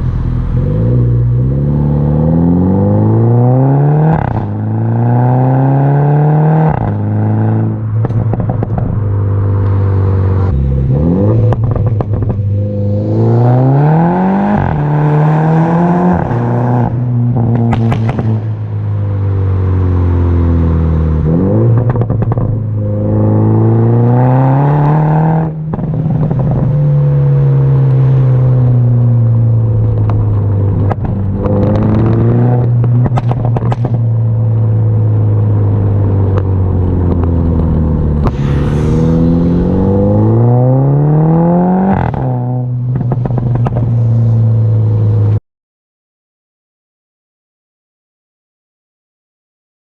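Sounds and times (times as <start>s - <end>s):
car engine revving through exhaust: 0.0s - 45.3s
exhaust pops and crackles: 8.0s - 9.0s, 11.4s - 12.5s, 17.4s - 18.5s, 21.8s - 22.6s, 29.8s - 34.7s, 36.2s - 38.6s, 42.9s - 44.1s.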